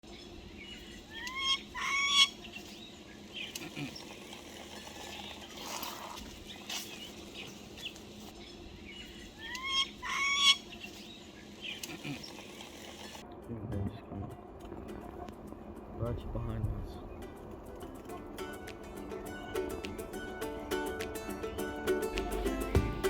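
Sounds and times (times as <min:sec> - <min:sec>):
bird calling: 0:00.1 - 0:13.2.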